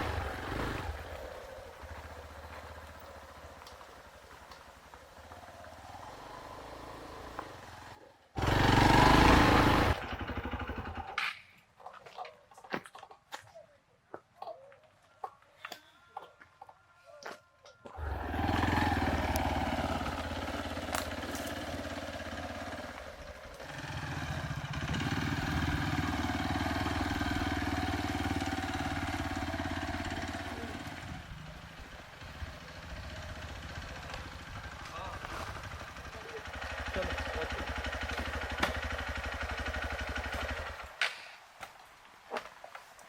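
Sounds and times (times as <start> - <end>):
motorcycle engine running: 0.0 - 11.2, 18.0 - 41.0.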